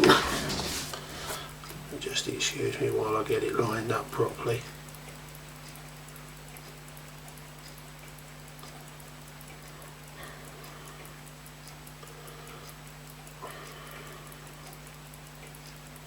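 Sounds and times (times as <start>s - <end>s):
handling noise: 0.0s - 1.5s
clock ticking: 0.0s - 16.0s.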